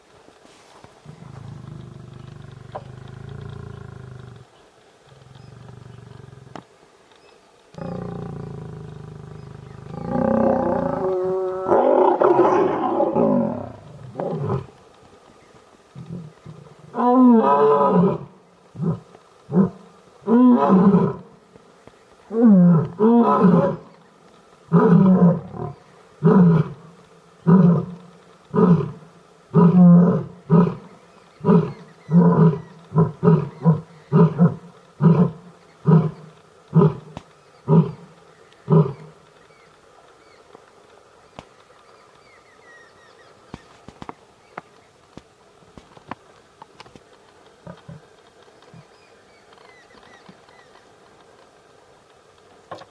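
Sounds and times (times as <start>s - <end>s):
lion roaring and grunting: 7.8s - 14.7s.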